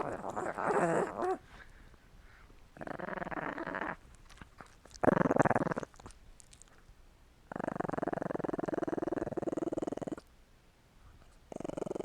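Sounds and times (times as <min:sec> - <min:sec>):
small dog growling: 0:00.0 - 0:01.6, 0:02.8 - 0:06.7, 0:07.5 - 0:10.3, 0:11.5 - 0:12.0.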